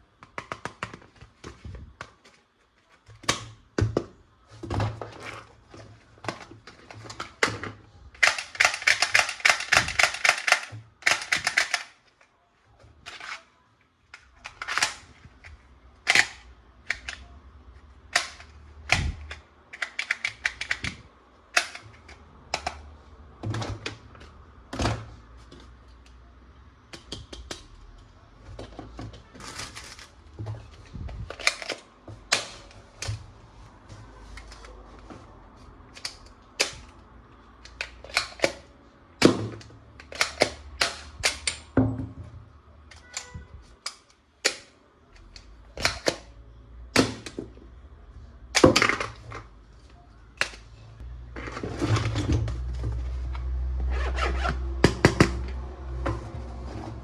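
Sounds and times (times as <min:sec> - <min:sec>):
toy gun plastic clicking: 0:08.2 - 0:12.0, 0:18.1 - 0:22.8.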